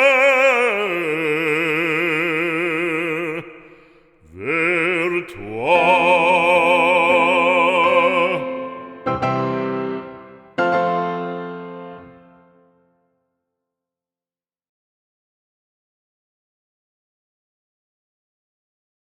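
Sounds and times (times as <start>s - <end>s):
operatic singer: 0.0s - 9.4s.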